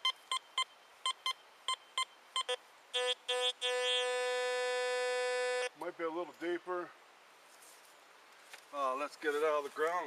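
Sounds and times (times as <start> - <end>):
metal detector beeps: 0.0 - 4.1
metal detector steady tone: 0.0 - 5.7.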